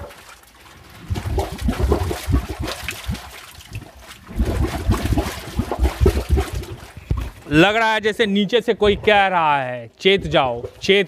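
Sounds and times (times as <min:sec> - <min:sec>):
gas bubbling through water: 0:00.0 - 0:07.6.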